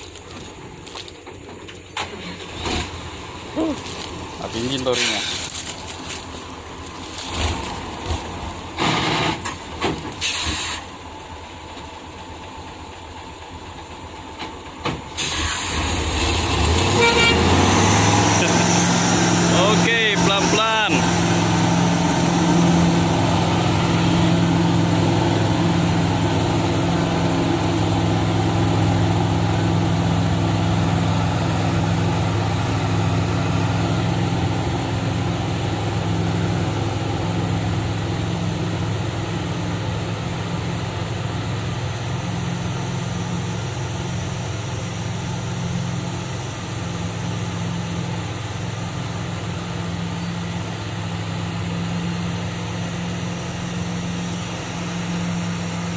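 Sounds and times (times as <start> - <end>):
diesel engine humming: 0.0 - 55.9.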